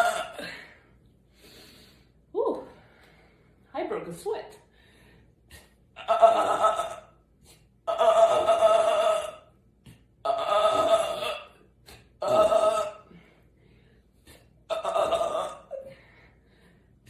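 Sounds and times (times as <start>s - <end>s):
woman belching: 10.3s - 11.6s, 12.2s - 13.0s, 14.7s - 15.8s.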